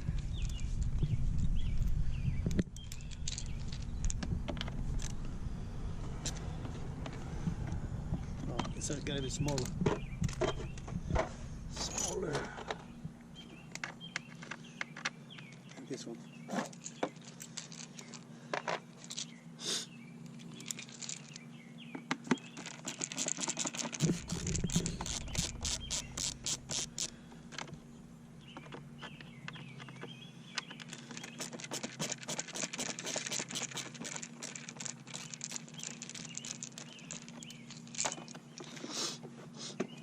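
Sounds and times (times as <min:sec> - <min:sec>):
steady low hum: 0:00.0 - 0:39.6
hand tool rapid clicking: 0:22.7 - 0:27.2, 0:31.1 - 0:37.4.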